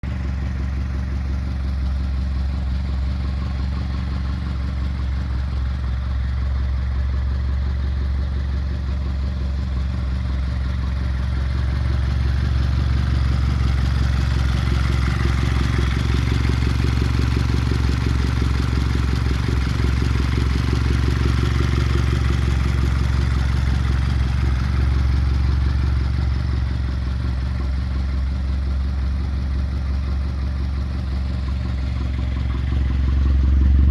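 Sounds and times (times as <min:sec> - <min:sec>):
turbocharged car engine running: 0:00.0 - 0:33.9.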